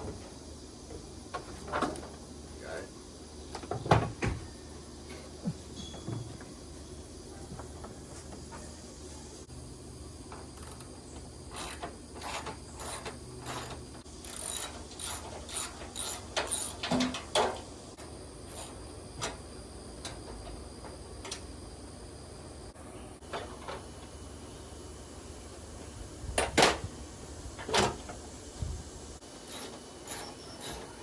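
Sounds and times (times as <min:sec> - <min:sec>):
ratchet wrench clicking: 0:11.5 - 0:16.9, 0:29.4 - 0:30.9.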